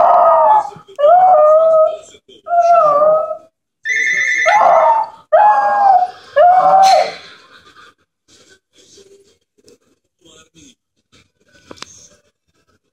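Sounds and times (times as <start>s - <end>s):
dog howling: 0.0s - 7.2s.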